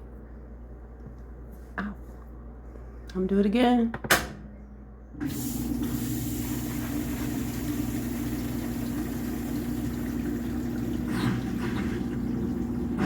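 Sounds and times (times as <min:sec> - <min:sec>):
drain pump humming: 0:05.2 - 0:13.0
water rushing hiss: 0:05.3 - 0:12.6.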